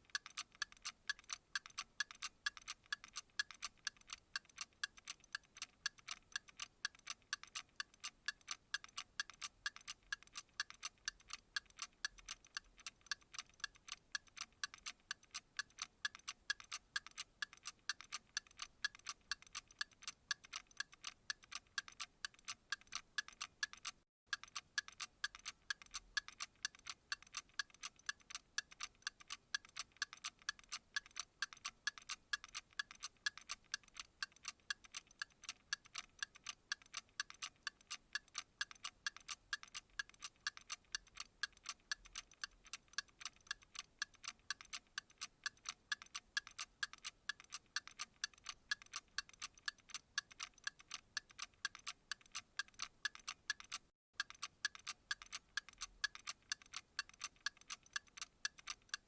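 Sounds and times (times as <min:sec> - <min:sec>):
steady light ticking: 0:00.0 - 0:59.0.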